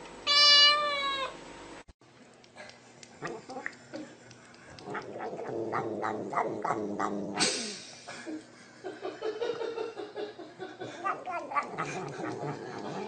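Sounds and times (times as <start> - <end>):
cat yowling: 0.3 - 1.4, 11.0 - 12.5
cat hissing: 4.5 - 8.0, 10.9 - 13.0.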